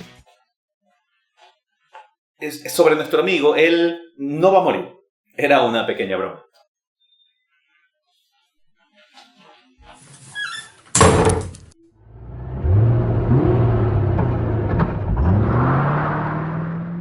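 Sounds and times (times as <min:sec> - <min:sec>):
loud thump: 0:11.0 - 0:11.6
engine revving up: 0:12.0 - 0:17.0.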